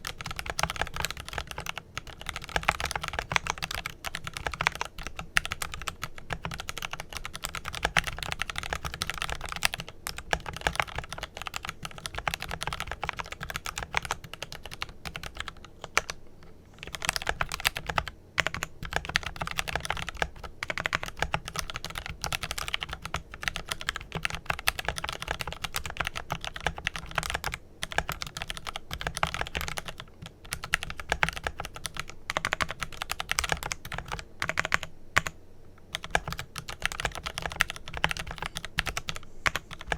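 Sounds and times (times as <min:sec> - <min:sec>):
fast typing on mechanical keyboard: 0:00.0 - 0:16.2, 0:16.8 - 0:39.9.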